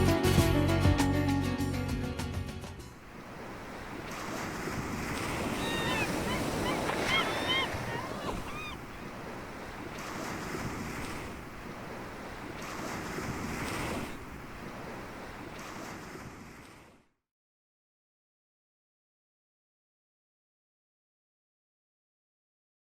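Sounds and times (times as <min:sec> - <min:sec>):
sea water washing: 0:03.0 - 0:17.0.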